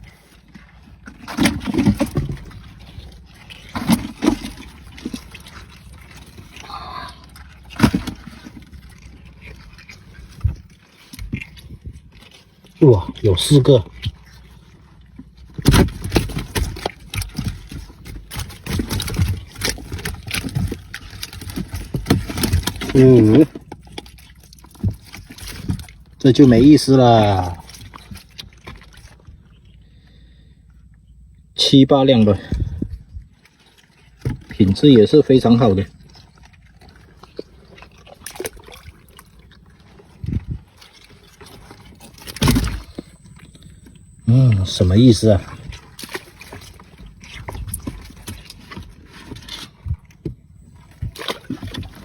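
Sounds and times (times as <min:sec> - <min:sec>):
splash: 0:00.0 - 0:12.5, 0:33.4 - 0:43.1, 0:45.2 - 0:49.9
fish flapping in a trap: 0:00.0 - 0:14.7, 0:15.5 - 0:29.3, 0:33.5 - 0:50.0
water sloshing and dribbling: 0:00.0 - 0:52.0.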